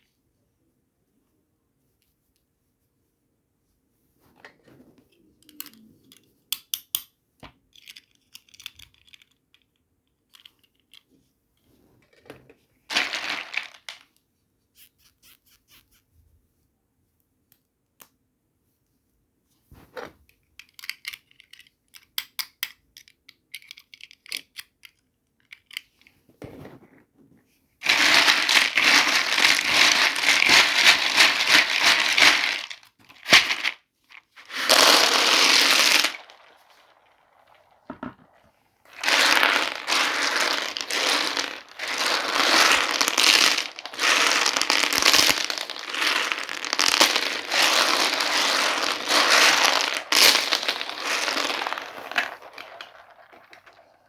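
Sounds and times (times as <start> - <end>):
plastic packaging crinkling: 12.9 - 14.0, 27.8 - 53.9.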